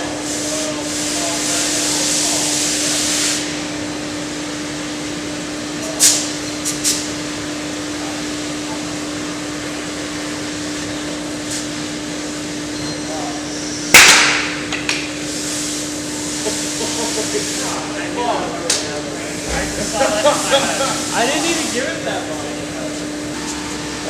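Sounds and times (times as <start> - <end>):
compressed air hissing: 15.2 - 18.0, 19.1 - 24.0
machine hum: 19.0 - 24.0.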